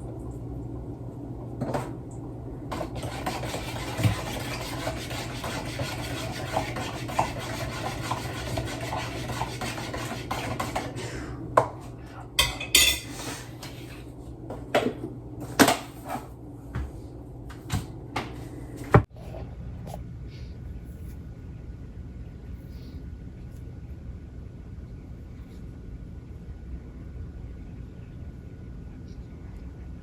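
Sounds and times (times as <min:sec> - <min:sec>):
dishes and cutlery clinking: 0:12.4 - 0:13.4.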